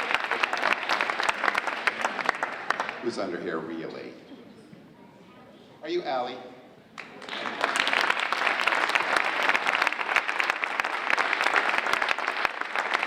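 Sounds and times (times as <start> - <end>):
audience applauding: 0.0 - 3.2, 7.0 - 13.0.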